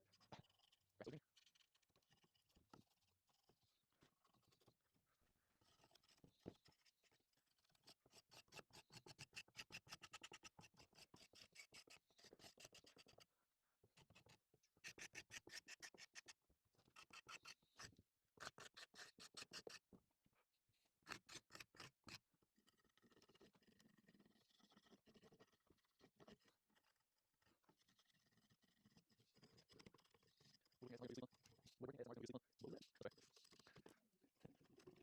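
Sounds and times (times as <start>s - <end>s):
faint rapid scratching: 5.6s - 13.3s, 21.1s - 35.0s.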